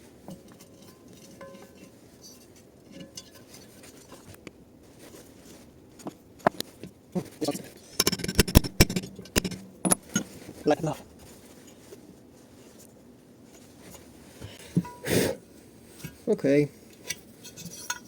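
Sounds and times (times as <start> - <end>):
metal tools clinking and knocking: 8.0 - 10.4.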